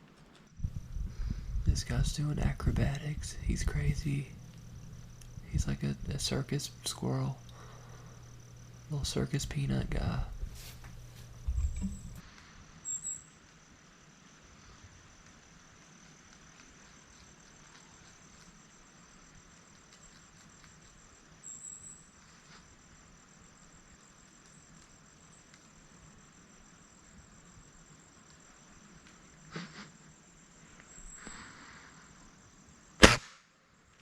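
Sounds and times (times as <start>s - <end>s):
insects trilling: 0.0s - 34.0s
faint rustles: 9.9s - 12.7s
air rifle firing: 33.0s - 33.5s.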